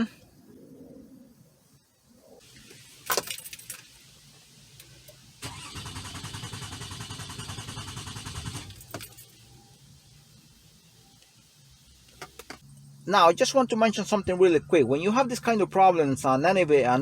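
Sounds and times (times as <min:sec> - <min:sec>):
engine cranking on starter: 0:05.4 - 0:09.2.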